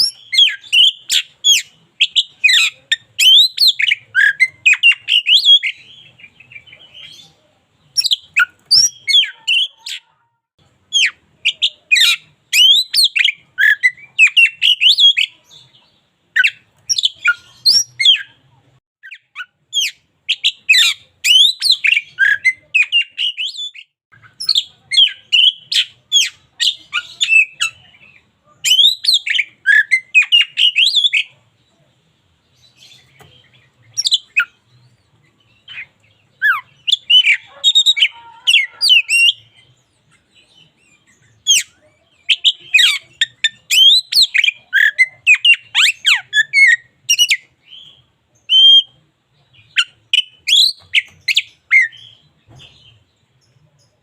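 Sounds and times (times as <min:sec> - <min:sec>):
bird whistles and chirps: 0:00.0 - 0:05.9, 0:08.0 - 0:10.0, 0:11.0 - 0:15.4, 0:16.4 - 0:18.4, 0:19.0 - 0:27.9, 0:28.6 - 0:31.3, 0:35.6 - 0:39.6, 0:41.1 - 0:49.0, 0:49.6 - 0:52.2.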